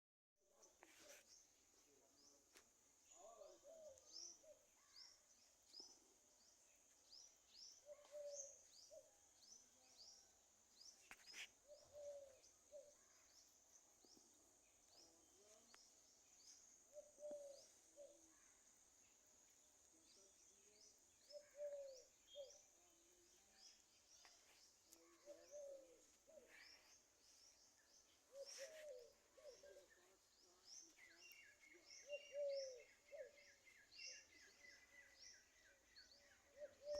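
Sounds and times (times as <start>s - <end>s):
small birds chirping: 0.5s - 36.9s
lower bird calls: 7.0s - 14.3s, 20.0s - 36.9s.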